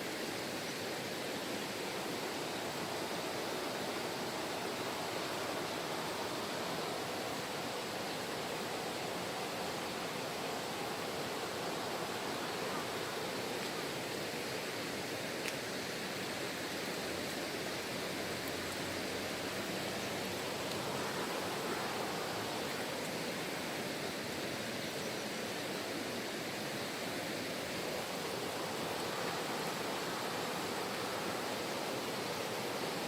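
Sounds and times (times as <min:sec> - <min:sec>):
water rushing over rocks: 0:00.0 - 0:33.0.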